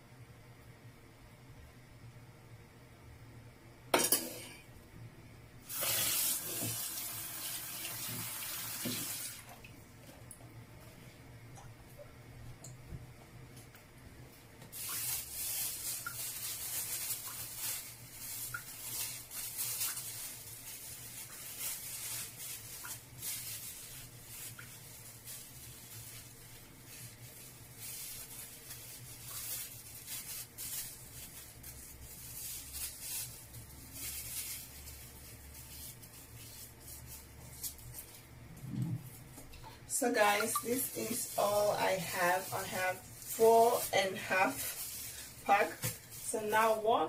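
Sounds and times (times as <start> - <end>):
rustling and rubbing: 14.3 - 38.3, 40.1 - 46.8
faint low hum: 15.4 - 47.0.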